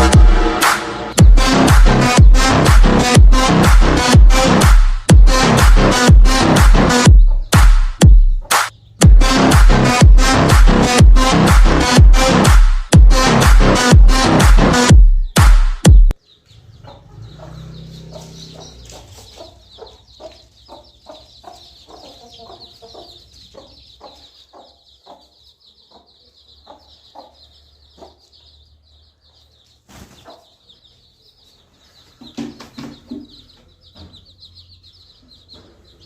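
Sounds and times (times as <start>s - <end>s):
chicks peeping: 1.1s - 36.0s
hen clucking: 6.0s - 7.6s, 16.4s - 28.7s, 29.3s - 36.0s.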